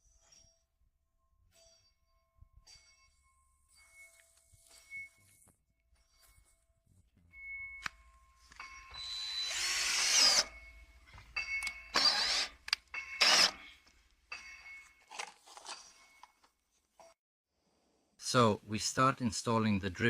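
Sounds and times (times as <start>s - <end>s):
power drill motor whining: 8.5s - 10.7s, 11.6s - 13.6s.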